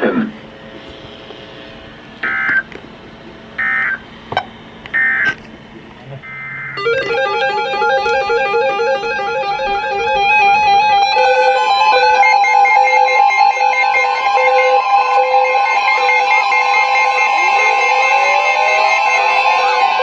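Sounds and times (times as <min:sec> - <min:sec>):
digital data tone bursts: 0:02.2 - 0:02.7, 0:03.6 - 0:04.0, 0:04.9 - 0:05.4, 0:06.2 - 0:20.0
electronic music: 0:06.2 - 0:20.0.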